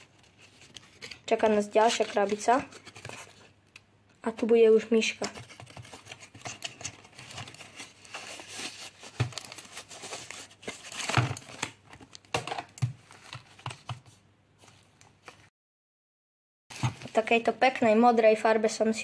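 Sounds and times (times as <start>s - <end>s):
packaging crinkling and rustling: 5.2s - 15.5s.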